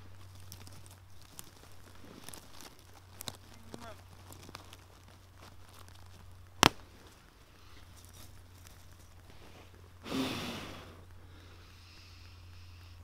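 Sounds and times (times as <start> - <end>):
sharp crack: 0.0 - 9.2
breath blown onto embers: 9.2 - 13.0.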